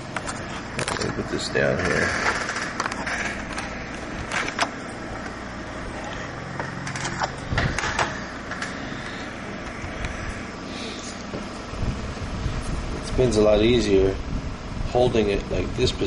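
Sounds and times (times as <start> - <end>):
small motor humming: 0.0 - 12.8.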